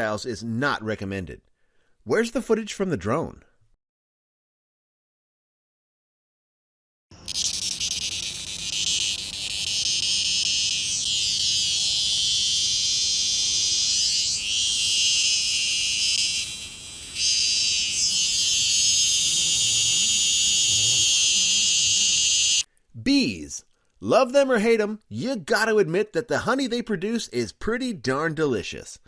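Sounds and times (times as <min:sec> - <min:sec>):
insects buzzing shrilly: 0:07.1 - 0:22.7.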